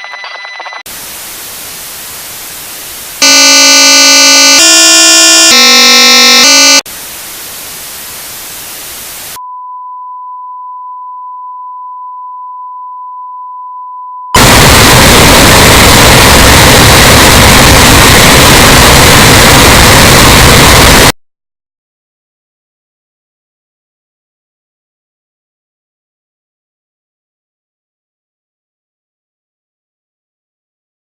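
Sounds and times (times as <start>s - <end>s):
hissing static: 0.9s - 9.4s, 14.4s - 21.1s
harsh electronic tone chord: 3.2s - 6.8s, 14.4s - 21.2s
steady test tone: 3.2s - 6.8s, 14.4s - 21.1s.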